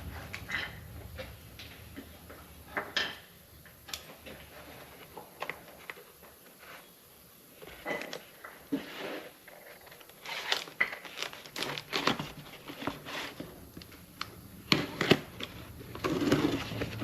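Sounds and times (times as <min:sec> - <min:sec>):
packaging tearing and crinkling: 0:09.6 - 0:13.4.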